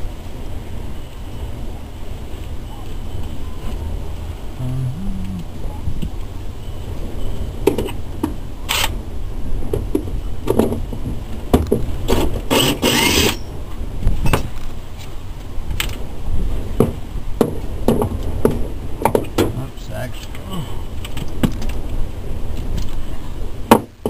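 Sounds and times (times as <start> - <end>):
wind rumbling on microphone: 0.0 - 24.0
scraping rustle: 10.8 - 16.7.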